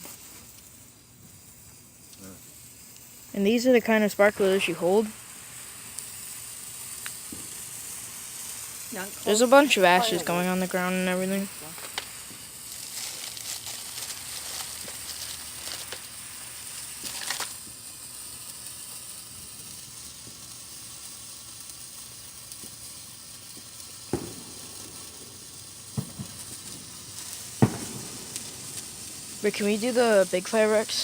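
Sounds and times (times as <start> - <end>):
sparkler hissing and crackling: 0.0 - 31.0
sharp pops: 4.4 - 17.9, 21.6 - 31.0.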